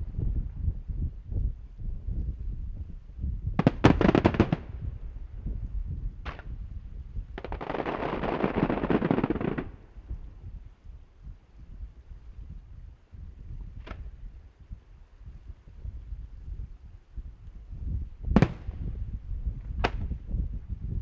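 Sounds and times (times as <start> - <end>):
firework bangs: 3.6 - 4.9, 7.4 - 9.8, 18.3 - 19.0
fireworks crackling: 3.6 - 5.4, 7.3 - 10.2.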